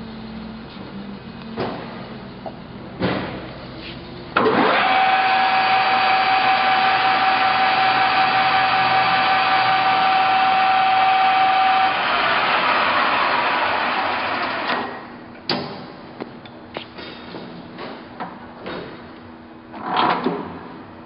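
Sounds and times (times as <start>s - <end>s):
high whine of lathe: 4.4s - 14.8s
lathe motor running: 4.4s - 14.9s.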